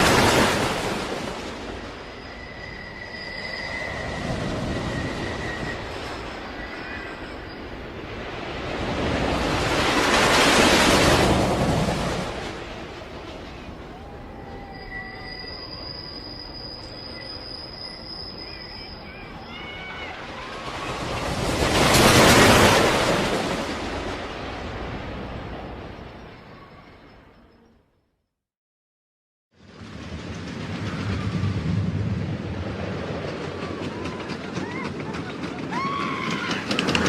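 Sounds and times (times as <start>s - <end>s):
roller coaster wheels rumbling: 0.0s - 27.4s, 29.6s - 37.0s
high-pitched wheel squeal: 2.1s - 7.8s, 14.1s - 20.6s.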